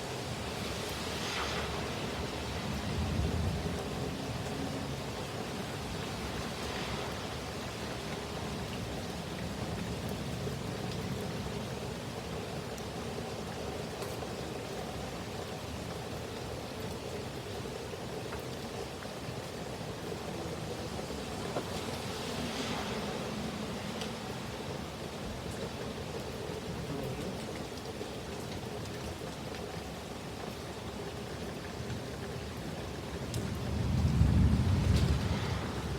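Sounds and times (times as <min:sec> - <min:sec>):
heavy rain pouring: 0:00.0 - 0:35.9
raindrop ticks: 0:25.5 - 0:34.2.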